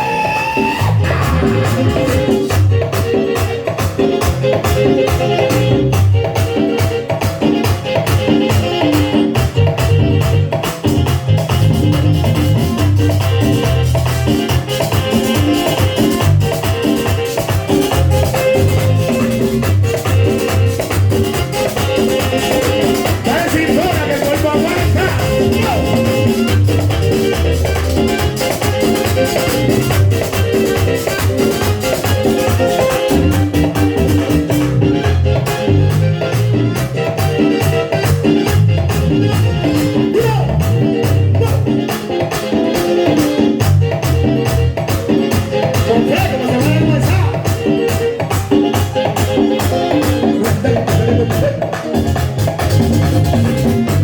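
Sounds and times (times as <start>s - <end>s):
pulsing bass: 0.0s - 6.9s, 7.6s - 41.9s, 43.6s - 47.6s, 50.0s - 54.0s
live merengue band: 0.0s - 54.0s
sliding melody line: 0.0s - 54.0s
shaker percussion beat: 10.6s - 35.2s, 46.6s - 54.0s.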